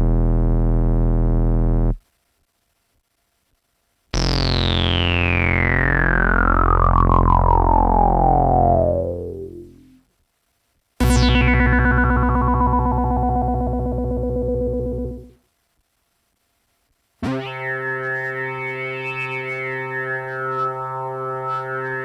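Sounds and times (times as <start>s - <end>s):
synthesizer low note filter sweep: 4.2s - 10.0s, 11.0s - 15.4s, 17.2s - 22.0s.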